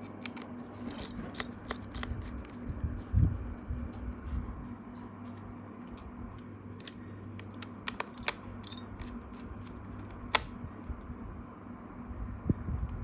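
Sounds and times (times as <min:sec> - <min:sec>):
laptop parts clicking: 0:00.0 - 0:02.7, 0:06.7 - 0:10.6.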